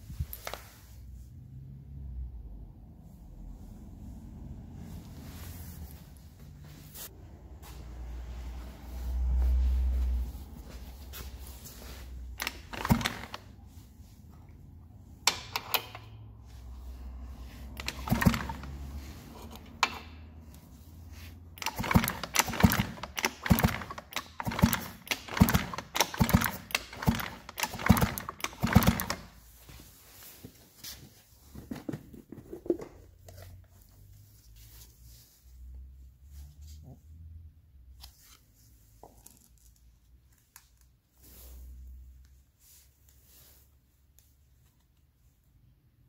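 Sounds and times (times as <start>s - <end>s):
tools clicking and knocking on metal: 12.4s - 13.4s, 17.8s - 18.8s, 19.4s - 20.2s, 21.6s - 29.3s.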